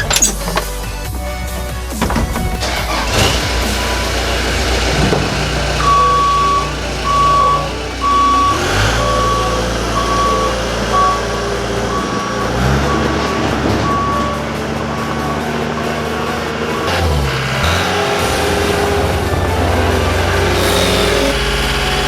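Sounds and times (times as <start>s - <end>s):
skid steer engine drone: 0.0s - 22.0s
backup alarm beeping: 3.8s - 15.8s.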